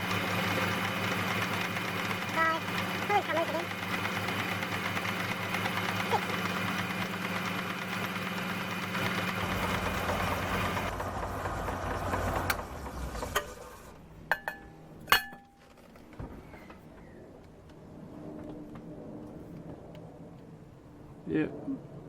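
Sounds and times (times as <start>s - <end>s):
lathe motor and belt drive running: 0.0s - 14.0s.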